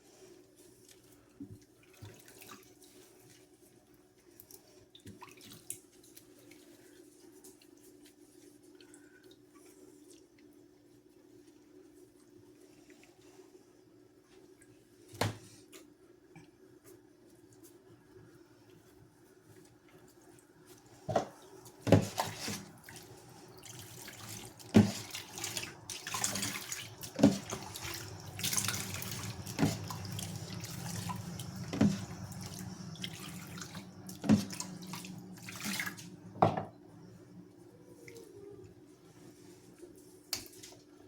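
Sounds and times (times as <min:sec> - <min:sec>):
water running from tap: 0:21.9 - 0:36.2.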